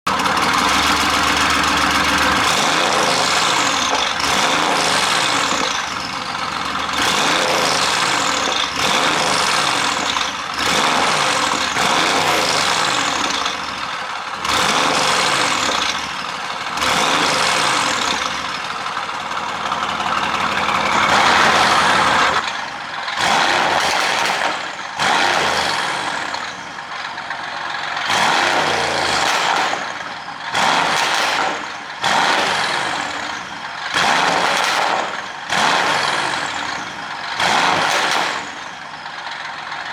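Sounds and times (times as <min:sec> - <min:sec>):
car engine revving: 0:00.0 - 0:26.7, 0:27.3 - 0:38.7
exhaust pops and crackles: 0:14.4 - 0:25.6.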